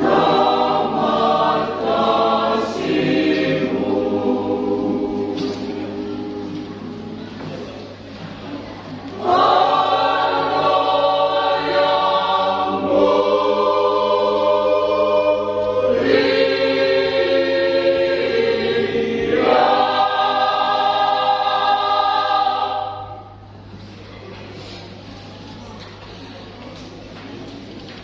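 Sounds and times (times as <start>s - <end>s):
choir singing chords: 0.0s - 7.6s, 9.1s - 23.7s.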